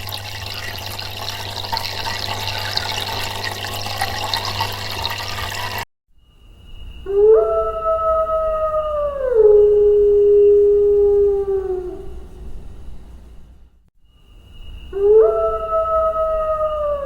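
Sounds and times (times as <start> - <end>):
dog howling: 7.1 - 12.1, 15.0 - 17.0.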